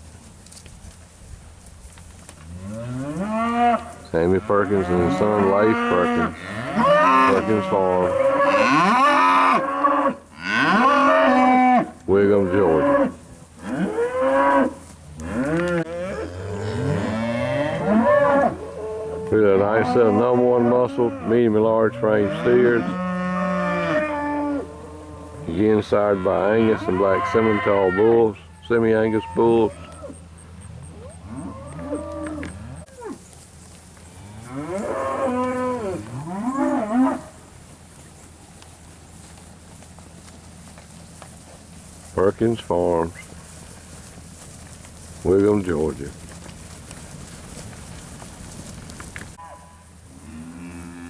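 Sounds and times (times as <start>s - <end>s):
cattle mooing: 2.5s - 30.2s, 30.9s - 33.2s, 34.2s - 37.3s, 49.4s - 51.0s.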